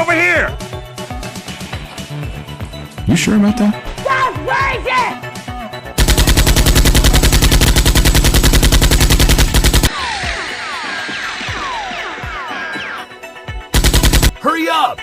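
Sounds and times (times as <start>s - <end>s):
rapid automatic gunfire: 6.0s - 10.0s, 13.8s - 14.4s.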